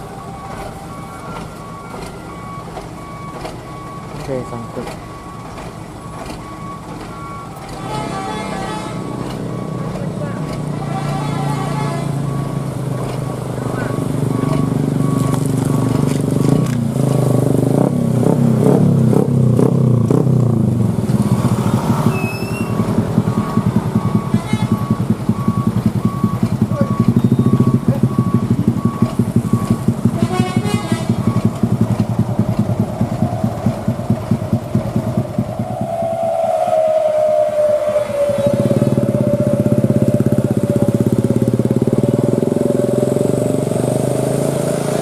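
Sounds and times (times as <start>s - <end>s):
electronic beeping: 0.0s - 16.1s, 22.1s - 30.1s
rising whining tone: 0.0s - 16.8s, 20.9s - 45.0s
diesel truck engine rumbling: 0.0s - 45.0s.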